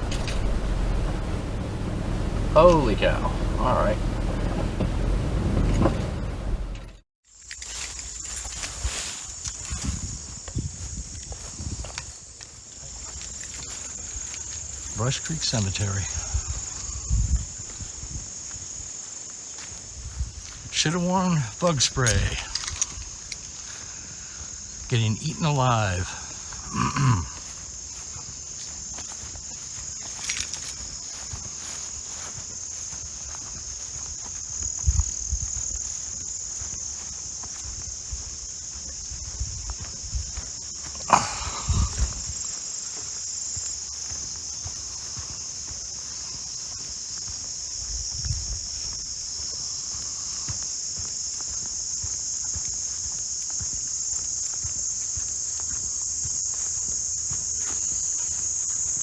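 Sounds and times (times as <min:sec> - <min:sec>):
low thumps: 0:00.0 - 0:07.0
insects trilling: 0:02.6 - 0:04.0, 0:07.2 - 0:59.0.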